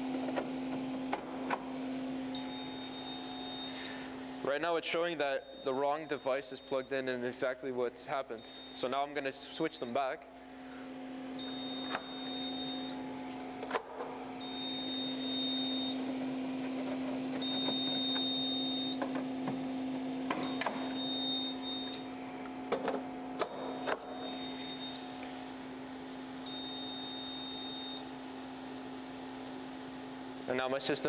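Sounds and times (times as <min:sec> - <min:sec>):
steady low hum: 0:00.0 - 0:31.0
high electronic beep: 0:11.4 - 0:13.0, 0:14.4 - 0:16.0, 0:20.4 - 0:22.0.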